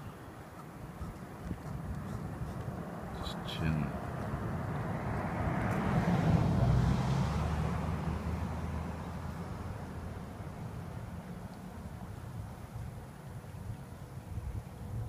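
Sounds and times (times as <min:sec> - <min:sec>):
engine passing by: 0:01.6 - 0:11.5.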